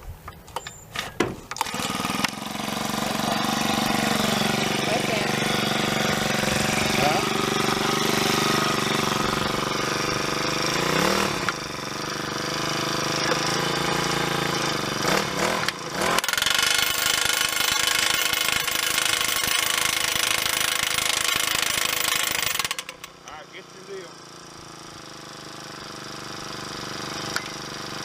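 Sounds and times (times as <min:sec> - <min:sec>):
post driver engine running: 0:01.4 - 0:28.0
post driver pounding: 0:15.2 - 0:23.2.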